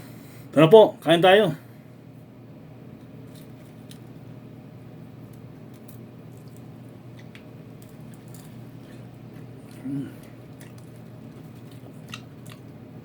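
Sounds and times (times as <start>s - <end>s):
steady low hum: 0.0s - 13.0s
eating noises: 5.7s - 13.0s.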